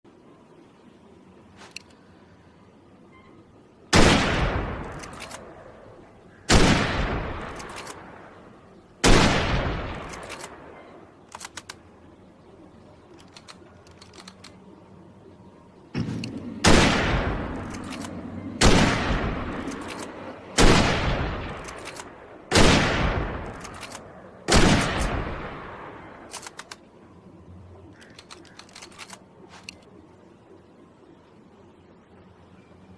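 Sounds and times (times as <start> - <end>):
rifle shots with echo: 3.9 - 5.4, 6.5 - 8.0, 9.0 - 10.6, 16.0 - 23.8, 24.5 - 25.8
small metallic clicks: 4.8 - 5.5, 7.4 - 8.1, 10.0 - 11.9, 13.0 - 14.8, 17.6 - 18.2, 19.5 - 20.2, 21.5 - 22.2, 23.4 - 24.1, 26.3 - 26.9, 27.9 - 30.0.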